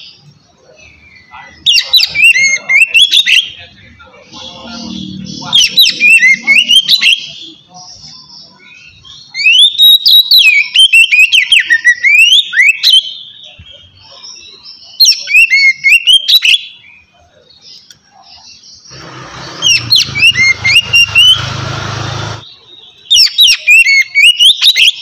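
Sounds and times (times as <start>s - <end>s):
bird singing whistled phrases: 8.2s - 13.6s, 23.1s - 25.0s.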